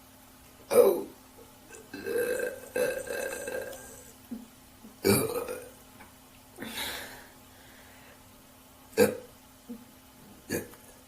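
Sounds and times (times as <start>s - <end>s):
woman burping: 0.7s - 1.1s, 1.7s - 4.4s, 5.0s - 5.7s, 9.0s - 9.3s, 10.5s - 10.8s.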